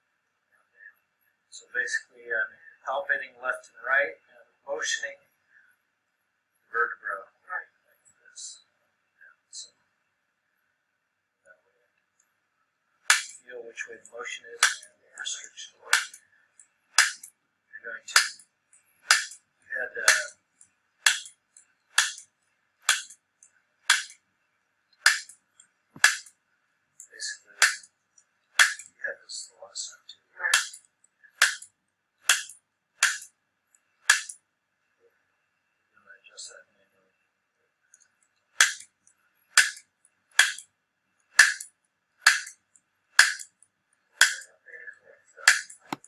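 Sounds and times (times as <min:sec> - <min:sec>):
adjusting instrument impact clicks: 0:45.5 - 0:46.0.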